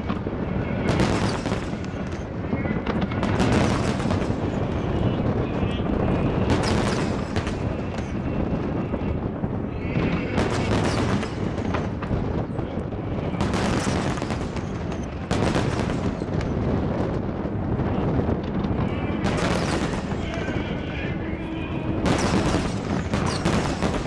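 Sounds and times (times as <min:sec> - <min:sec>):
fireworks booming: 0:00.0 - 0:24.0
fireworks crackling: 0:00.0 - 0:24.0.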